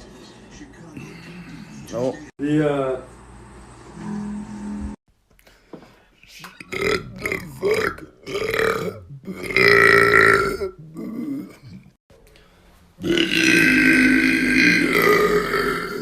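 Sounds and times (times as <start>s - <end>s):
man burping loudly: 6.6s - 12.0s, 13.0s - 16.0s.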